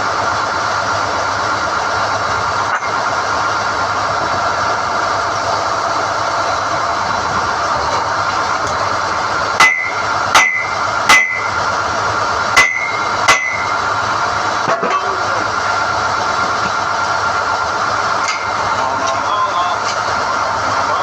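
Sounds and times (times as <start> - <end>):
drilling rig running: 0.0 - 21.0
steel-on-steel clanks: 2.6 - 3.1, 9.6 - 11.8, 12.5 - 15.7, 18.0 - 20.2.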